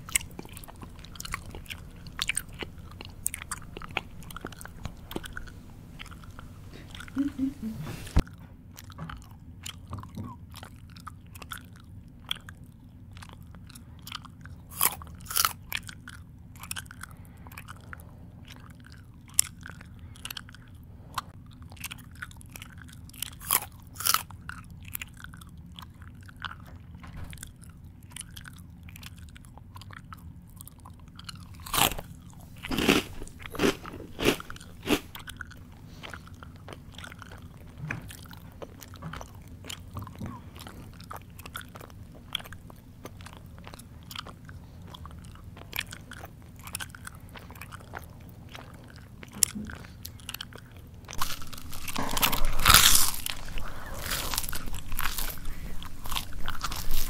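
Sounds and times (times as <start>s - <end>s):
crunchy bites: 0.0s - 7.1s, 14.1s - 17.8s, 21.7s - 26.4s, 31.1s - 57.0s
person chewing: 0.0s - 57.0s.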